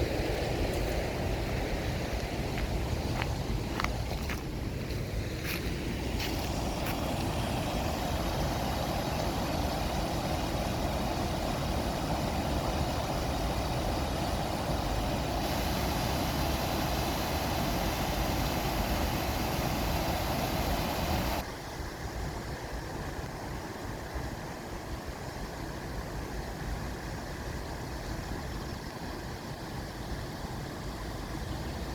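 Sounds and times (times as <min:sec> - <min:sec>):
stream rushing over rocks: 0:00.0 - 0:21.7.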